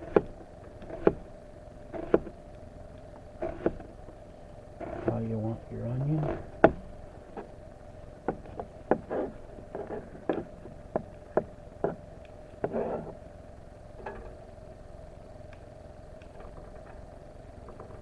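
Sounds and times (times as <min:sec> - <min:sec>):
knife chopping onion on board: 0:00.0 - 0:01.3, 0:02.0 - 0:02.3, 0:06.2 - 0:06.9.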